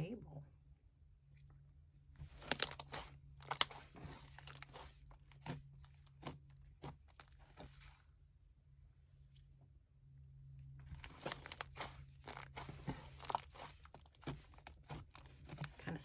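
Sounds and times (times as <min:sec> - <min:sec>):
slime squishing and crackling: 0:02.2 - 0:08.1, 0:10.6 - 0:16.0.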